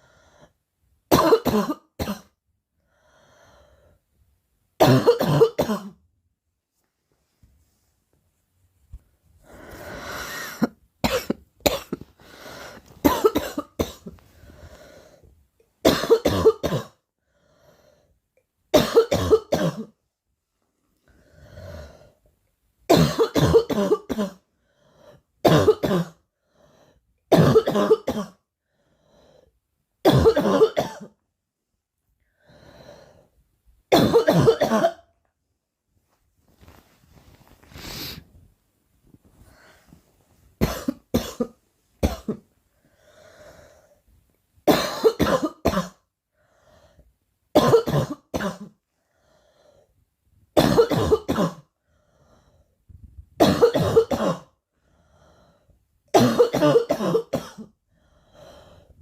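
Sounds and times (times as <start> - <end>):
girl coughing: 1.1 - 2.4, 4.8 - 6.0, 10.3 - 12.1, 13.0 - 14.2, 15.8 - 17.0, 18.8 - 20.0, 22.9 - 24.4, 25.4 - 26.2, 27.3 - 28.4, 30.1 - 31.2, 33.9 - 35.1, 40.6 - 42.5, 44.7 - 46.0, 47.6 - 48.8, 50.6 - 51.7, 53.4 - 54.5, 56.2 - 57.7
faint breaths: 2.8 - 4.1, 9.0 - 10.5, 12.1 - 13.0, 14.2 - 15.4, 17.2 - 18.2, 24.5 - 25.3, 28.6 - 29.6, 39.1 - 40.4, 42.6 - 44.2, 46.3 - 47.1, 48.9 - 50.0, 51.8 - 52.9, 54.7 - 55.8, 57.9 - 59.0.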